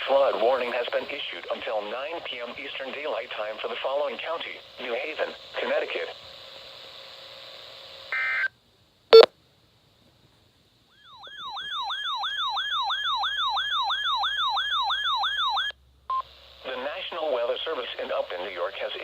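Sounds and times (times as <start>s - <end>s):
electronic siren wailing: 11.0s - 15.7s.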